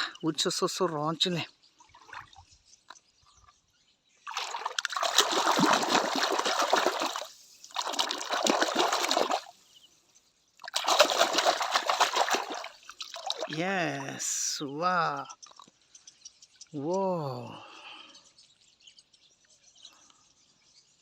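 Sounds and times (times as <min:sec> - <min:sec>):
water pouring and splashing: 0:04.3 - 0:09.6, 0:10.6 - 0:14.3.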